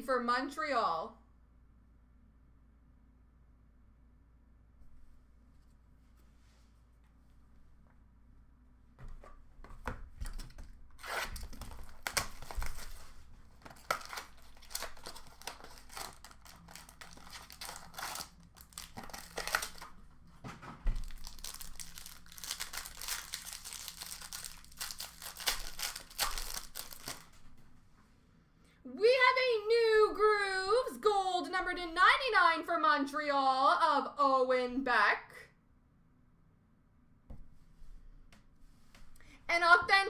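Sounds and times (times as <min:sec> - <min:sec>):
packaging tearing and crinkling: 0:10.3 - 0:20.2, 0:20.9 - 0:27.5.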